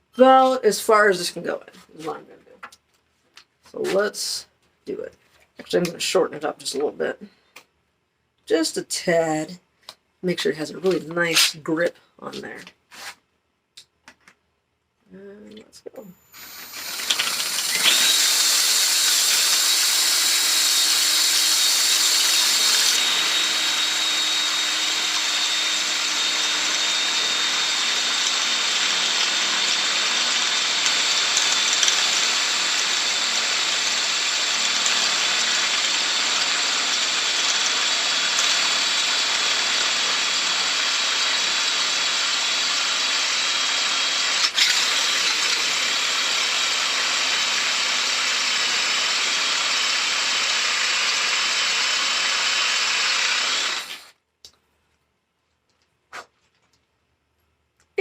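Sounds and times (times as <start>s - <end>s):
power drill whining through metal: 16.2s - 54.2s.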